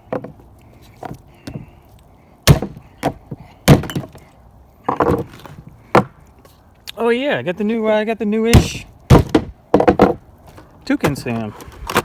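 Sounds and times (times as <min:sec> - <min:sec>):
sharp knocks and thuds: 0:02.4 - 0:04.2, 0:08.6 - 0:10.2.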